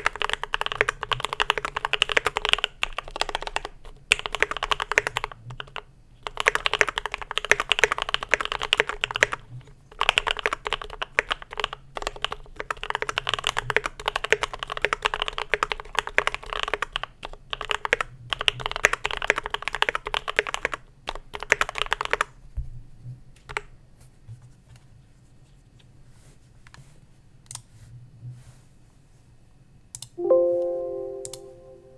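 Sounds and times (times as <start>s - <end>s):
mechanical keyboard typing: 0.0s - 22.3s.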